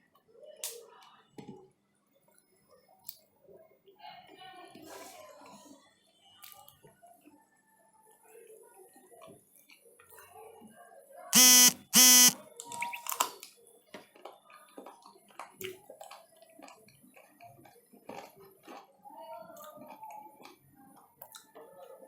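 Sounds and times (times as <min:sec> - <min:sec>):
buzzing beeps: 0:11.4 - 0:12.4
eating clicks and smacks: 0:14.2 - 0:18.9, 0:19.6 - 0:21.6.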